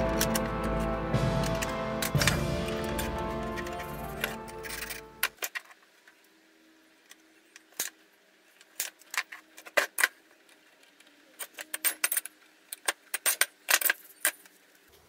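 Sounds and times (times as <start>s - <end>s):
metal parts and tools clinking: 0.0s - 0.5s, 1.4s - 5.8s, 11.4s - 14.5s.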